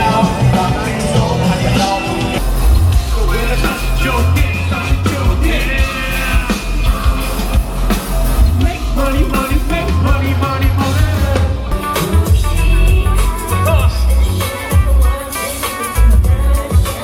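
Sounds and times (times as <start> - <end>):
person singing: 0.0 - 2.4, 8.6 - 17.0
loud rock music: 0.0 - 17.0.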